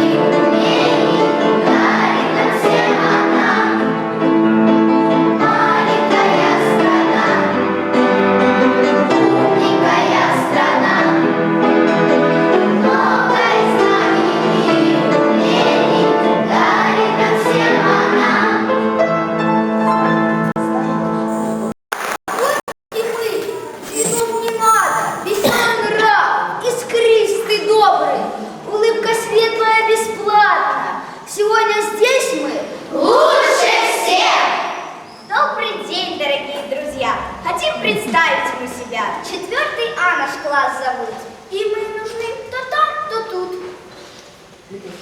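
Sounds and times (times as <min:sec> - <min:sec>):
children singing a song: 0:00.0 - 0:04.2, 0:05.0 - 0:07.9, 0:09.0 - 0:18.8, 0:32.8 - 0:35.1.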